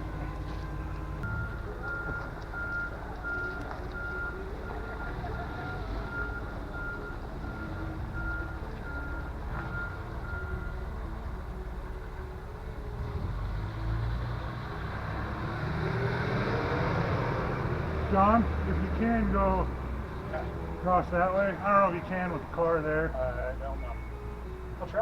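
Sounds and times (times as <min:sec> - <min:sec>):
reversing alarm beeping: 0:00.0 - 0:10.9, 0:23.7 - 0:24.3
truck engine running: 0:00.0 - 0:25.0.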